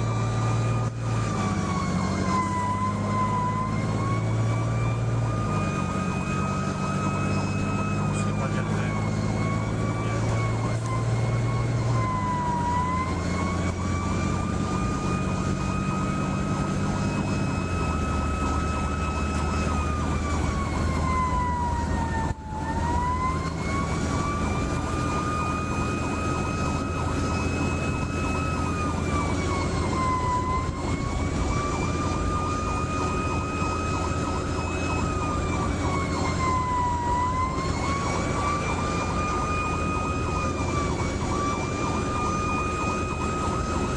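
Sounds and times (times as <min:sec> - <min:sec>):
fire engine siren wailing: 0:00.0 - 0:43.9
truck engine drone: 0:00.0 - 0:43.9.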